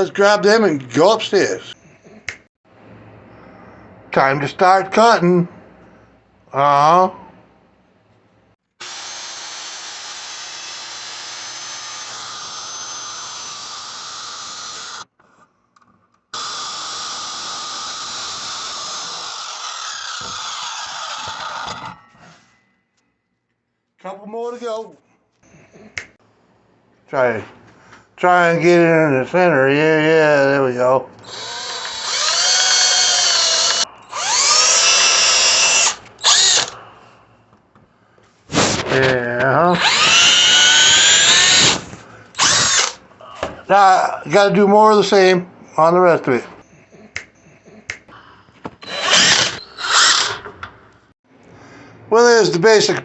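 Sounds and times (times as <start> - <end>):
power saw cutting wood: 8.8 - 15.1, 16.4 - 22.0, 31.2 - 36.8, 39.8 - 43.0, 48.8 - 50.6.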